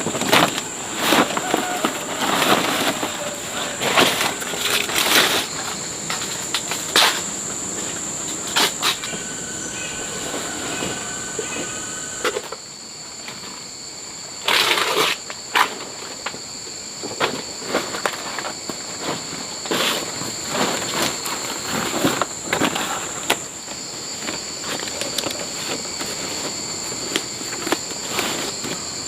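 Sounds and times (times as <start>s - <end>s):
handling noises: 0.0s - 12.6s
insects droning: 0.0s - 29.0s.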